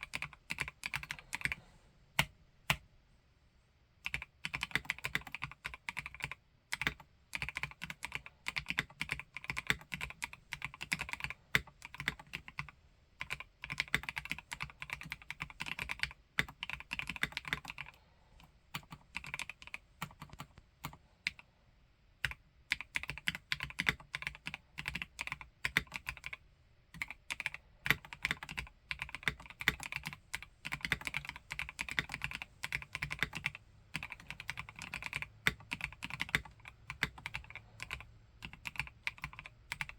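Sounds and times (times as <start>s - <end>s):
mechanical keyboard typing: 0.0s - 1.6s, 4.0s - 18.0s, 18.8s - 21.4s, 22.2s - 39.9s.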